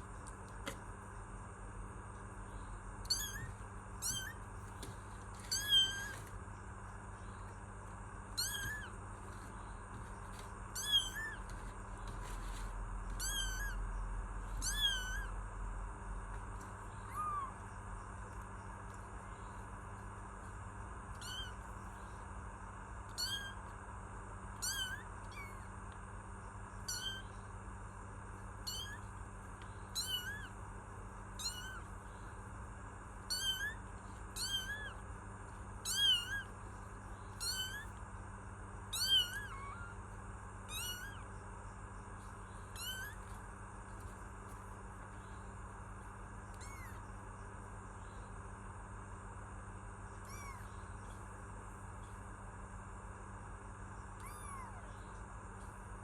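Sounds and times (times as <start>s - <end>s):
kitten meowing: 3.0s - 4.4s, 5.4s - 6.3s, 8.4s - 13.8s, 14.5s - 15.4s, 16.9s - 17.7s, 21.1s - 21.7s, 23.1s - 23.7s, 24.6s - 25.7s, 26.8s - 27.4s, 28.6s - 29.1s, 29.9s - 30.6s, 31.4s - 31.9s, 33.3s - 35.0s, 35.8s - 36.5s, 37.4s - 38.0s, 38.9s - 40.0s, 40.7s - 41.3s, 42.7s - 43.4s, 46.5s - 47.1s, 50.2s - 51.2s, 54.2s - 55.0s.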